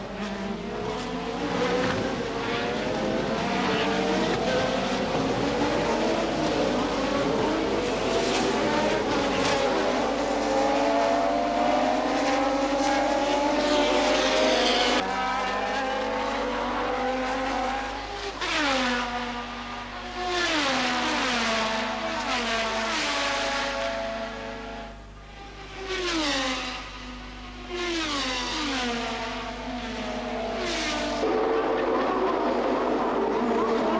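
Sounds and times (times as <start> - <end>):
racing car engine revving: 0.2 - 25.0.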